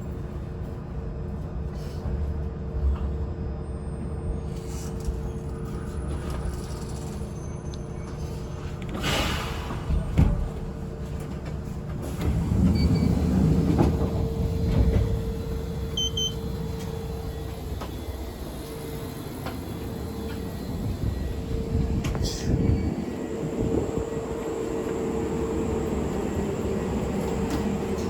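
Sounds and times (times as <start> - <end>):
train car hum: 0.0 - 28.0
train rumble: 0.0 - 28.0
short beeps: 16.0 - 16.4.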